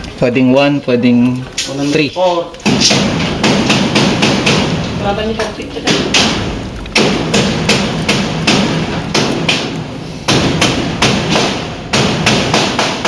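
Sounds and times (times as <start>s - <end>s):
hammer blows: 5.9s - 13.0s.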